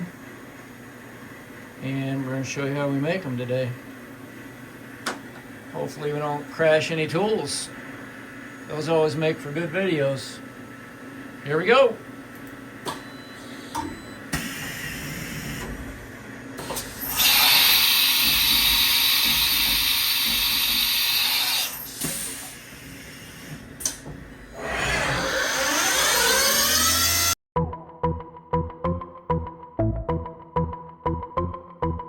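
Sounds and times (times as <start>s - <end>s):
machine running: 13.7s - 27.4s
mill cutting metal hissing: 16.6s - 27.4s
whine shifting in pitch: 24.5s - 27.4s.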